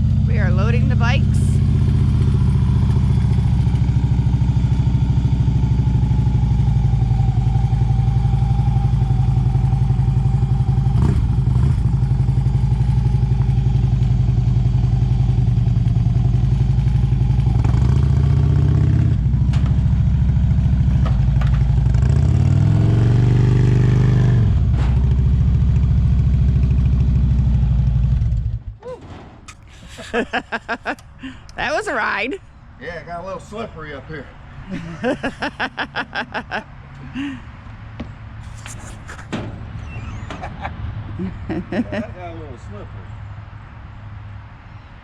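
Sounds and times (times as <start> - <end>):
motorcycle engine revving: 0.0 - 28.8
metal clanks: 28.8 - 30.0.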